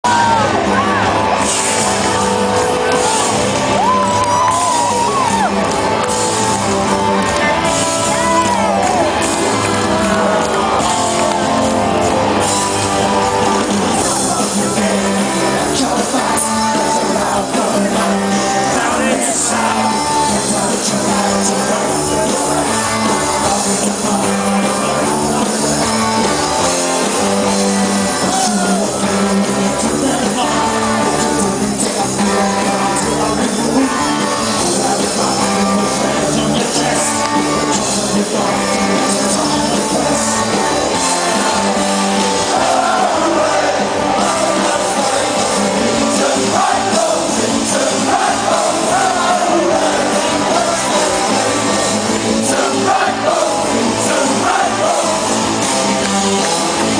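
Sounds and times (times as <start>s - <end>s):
rock band playing live: 0.0s - 56.9s
person singing: 12.6s - 56.9s.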